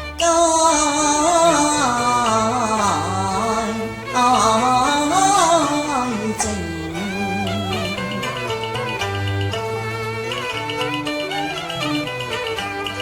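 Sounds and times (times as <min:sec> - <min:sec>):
instrumental accompaniment: 0:00.0 - 0:13.0
person singing opera: 0:00.2 - 0:09.4.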